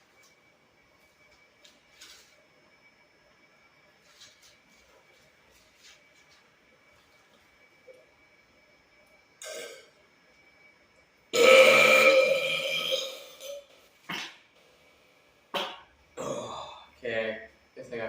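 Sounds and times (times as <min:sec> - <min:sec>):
man burping: 0:09.4 - 0:09.9, 0:11.4 - 0:14.4, 0:15.6 - 0:16.9.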